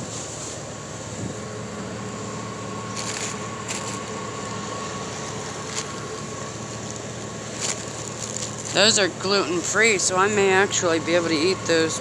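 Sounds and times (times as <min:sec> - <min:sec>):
mechanical hum with high whine: 0:00.0 - 0:12.0
plastic packaging rustling: 0:02.9 - 0:04.1, 0:05.6 - 0:09.0.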